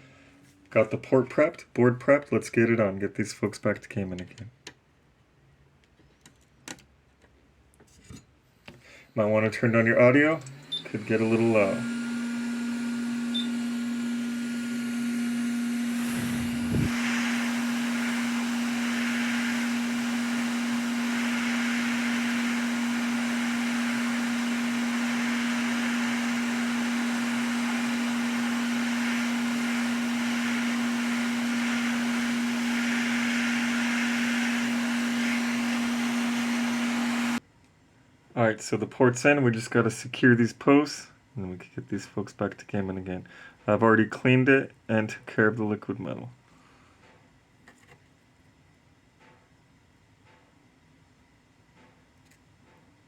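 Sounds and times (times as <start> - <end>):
hot air station blowing: 10.7 - 37.4.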